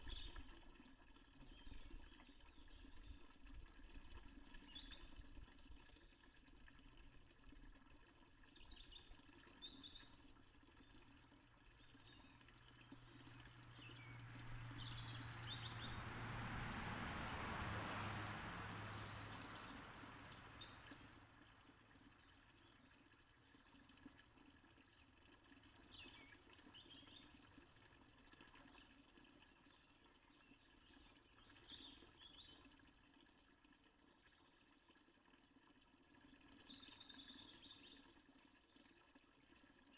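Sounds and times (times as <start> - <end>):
fountain splashing: 11.2 - 28.7
small birds chirping: 11.7 - 16.9, 18.6 - 22.4
rushing swell with low hum: 14.1 - 19.8.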